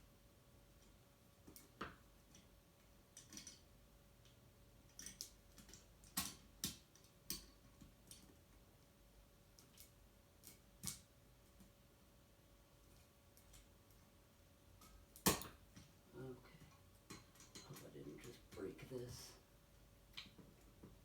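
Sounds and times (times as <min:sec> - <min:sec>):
faint steady hum: 0:00.0 - 0:21.0
clicks and taps of screws: 0:03.2 - 0:03.6.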